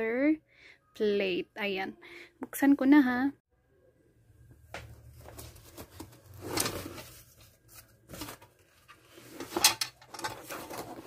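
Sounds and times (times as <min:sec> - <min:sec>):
packaging rustling and scraping: 0:05.0 - 0:11.0.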